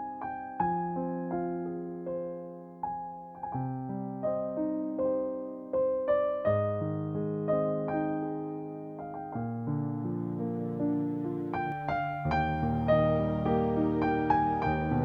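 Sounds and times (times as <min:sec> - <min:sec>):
slow piano melody: 0:00.0 - 0:15.0.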